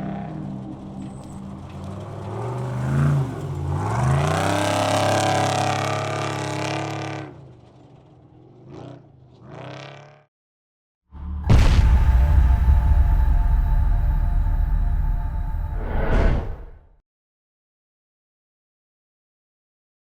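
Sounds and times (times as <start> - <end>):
race vehicle engine accelerating: 0.0 - 8.7, 11.2 - 16.8
engine revving: 1.8 - 7.4, 11.2 - 16.8.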